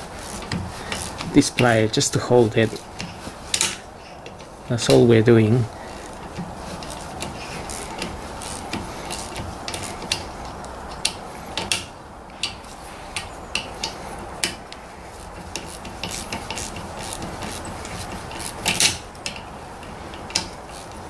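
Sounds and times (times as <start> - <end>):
socket ratchet clicking: 5.9 - 21.0.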